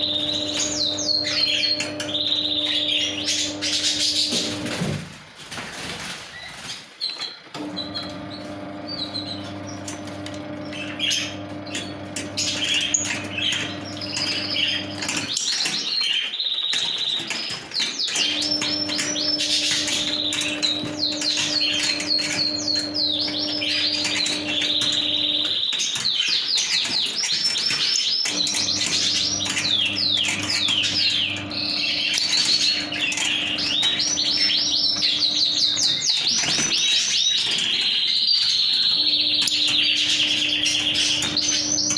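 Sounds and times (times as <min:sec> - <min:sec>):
lovebirds chattering: 0:00.0 - 0:05.1, 0:06.3 - 0:41.9.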